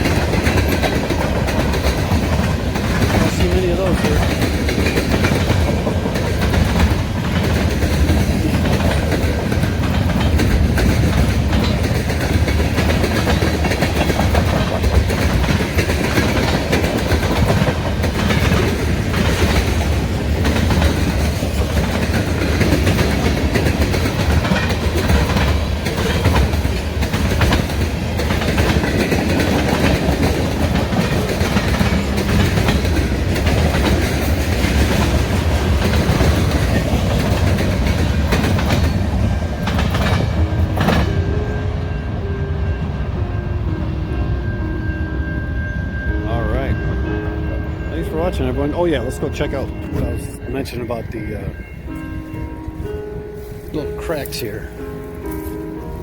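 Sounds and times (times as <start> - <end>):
train wheels clacking on rail: 0.0 - 43.9
freight cars rumbling: 0.0 - 56.0.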